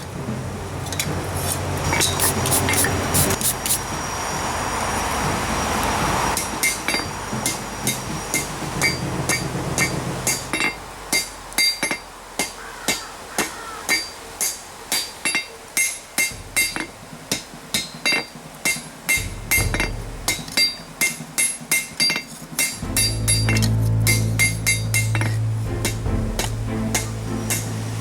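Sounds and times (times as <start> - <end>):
hammer striking steel on anvil: 6.4 - 12.6, 13.9 - 28.0.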